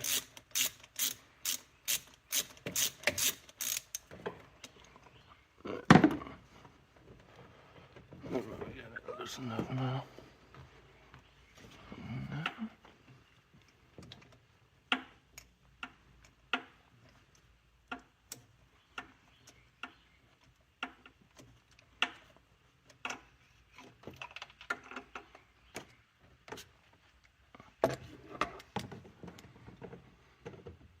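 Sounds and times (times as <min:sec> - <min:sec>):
hand tools clicking on metal: 0:00.0 - 0:04.1.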